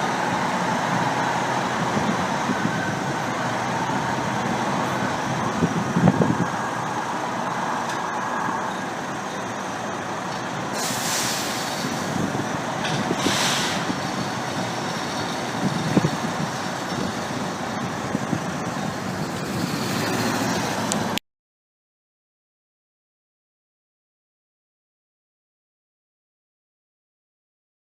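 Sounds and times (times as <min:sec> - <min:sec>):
diesel engine running: 0:00.0 - 0:21.2
air brakes hissing: 0:10.7 - 0:12.3, 0:12.9 - 0:14.0.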